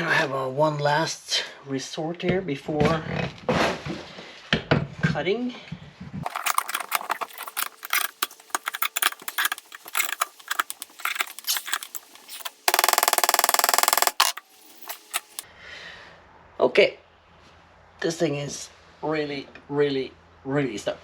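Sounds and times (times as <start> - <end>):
power tool hammering rattle: 6.2 - 15.4.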